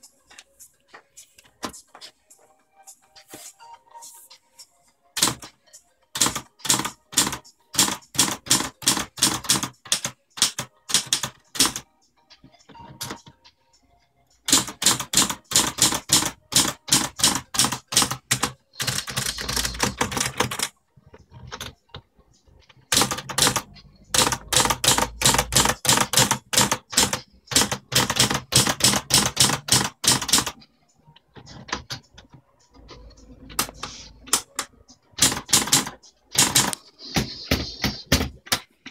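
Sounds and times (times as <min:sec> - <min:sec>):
typewriter key strikes: 0:06.2 - 0:11.8, 0:14.5 - 0:20.7, 0:24.2 - 0:30.6, 0:35.2 - 0:36.8.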